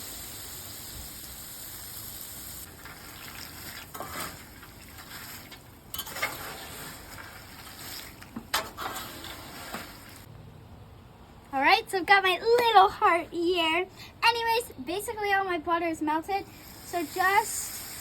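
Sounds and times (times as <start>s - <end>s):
butter sizzling: 0.0s - 10.3s
snack mix scraped on griddle: 2.8s - 10.3s.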